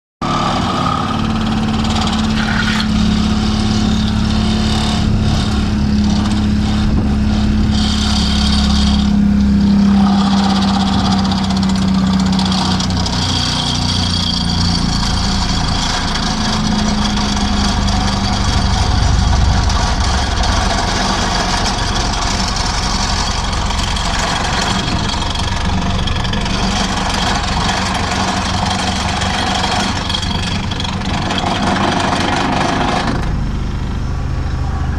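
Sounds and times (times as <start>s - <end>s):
vibratory hammer driving pile: 0.2s - 33.3s
diesel engine: 0.2s - 34.9s
steady hum: 0.3s - 31.0s.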